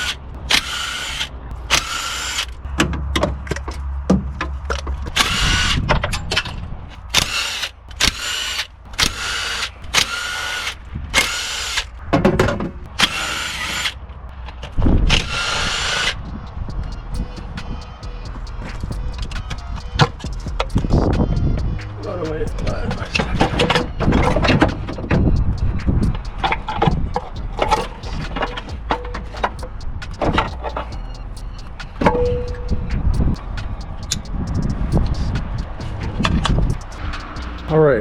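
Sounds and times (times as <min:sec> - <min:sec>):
cordless power driver spinning bolts: 0:00.0 - 0:02.6, 0:05.1 - 0:05.8, 0:07.1 - 0:14.0.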